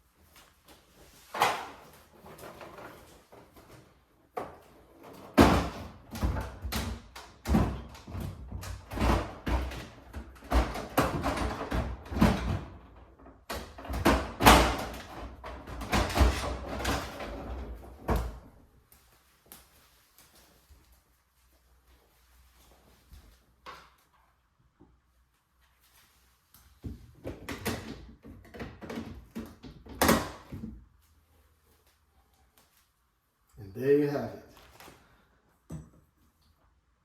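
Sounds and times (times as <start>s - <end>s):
refrigerator shelves knocking and clattering: 4.3s - 18.6s, 26.8s - 30.9s.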